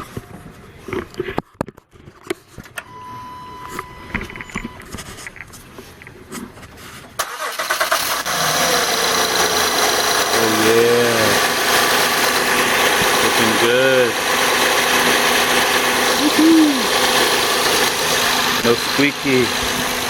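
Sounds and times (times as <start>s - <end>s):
car engine starting and idling: 7.2s - 20.0s.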